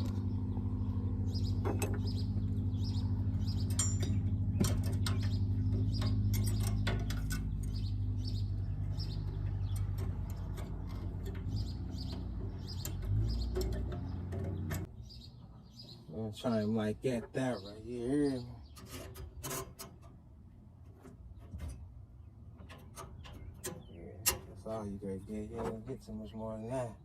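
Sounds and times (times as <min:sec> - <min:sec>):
low machine hum: 0:00.0 - 0:16.4
small birds chirping: 0:00.0 - 0:27.0
small metal parts clicking: 0:09.0 - 0:14.9.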